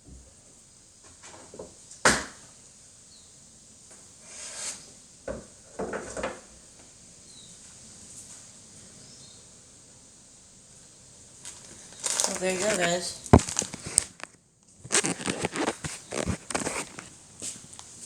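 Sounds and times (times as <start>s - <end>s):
objects being handled: 11.5s - 17.6s.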